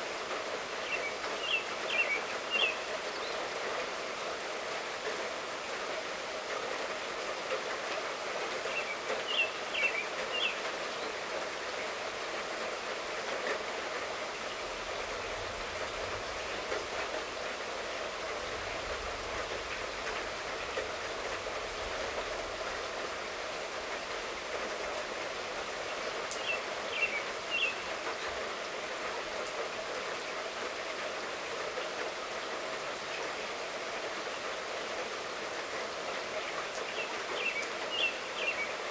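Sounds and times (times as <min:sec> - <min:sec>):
light rain falling: 0:00.0 - 0:38.9
birds chirping: 0:00.8 - 0:03.4, 0:08.6 - 0:10.7, 0:26.3 - 0:27.9, 0:36.9 - 0:38.7.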